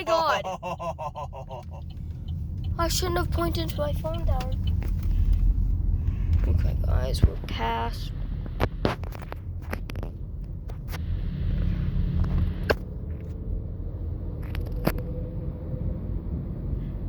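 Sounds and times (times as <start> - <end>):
car cabin road and engine noise: 0.0 - 17.0
sharp clicks and taps: 1.6 - 5.4.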